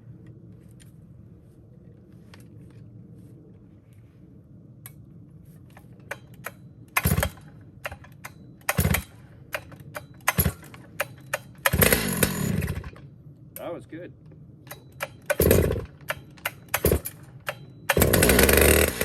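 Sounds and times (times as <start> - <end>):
chainsaw starter cord yanks: 8.7 - 12.9, 15.0 - 19.0.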